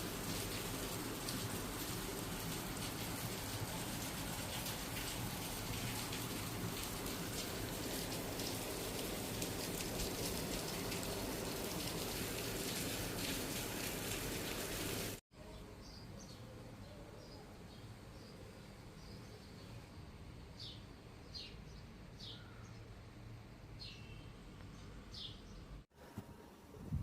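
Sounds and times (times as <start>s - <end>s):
heavy rain patter: 0.0s - 15.2s.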